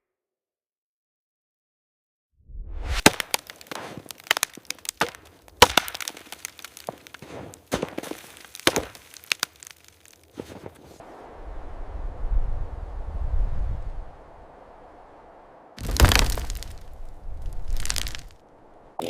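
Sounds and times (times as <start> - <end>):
tree wood cracking and snapping: 3.0 - 10.7, 15.8 - 18.4
low rumble: 11.0 - 19.0.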